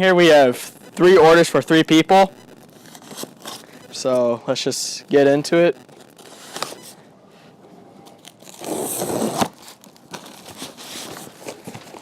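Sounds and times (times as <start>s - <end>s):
packing paper rustling: 2.7s - 3.8s, 8.0s - 12.0s
cardboard box ripping: 8.4s - 11.6s.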